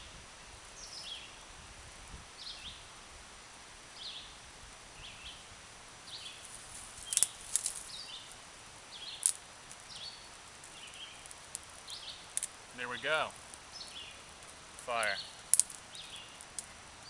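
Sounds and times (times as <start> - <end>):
bird chirping: 6.1 - 16.8
steel striker scraping flint: 9.1 - 12.6, 13.3 - 16.8.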